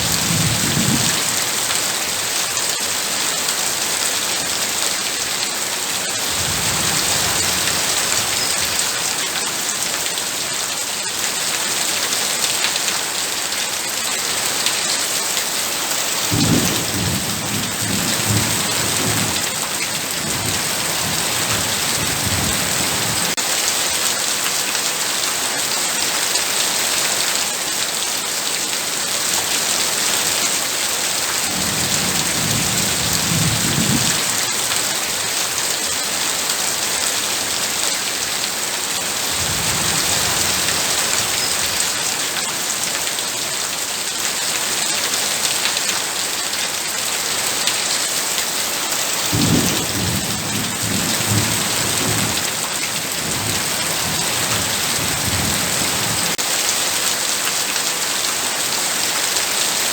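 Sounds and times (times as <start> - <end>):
thunder rumbling: 0.0 - 1.5, 16.3 - 23.4
heavy rain pouring: 0.0 - 59.9.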